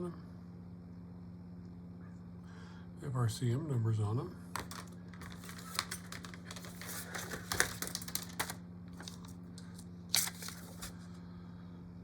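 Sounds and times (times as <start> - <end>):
plastic marker pens clicking: 4.6 - 10.9.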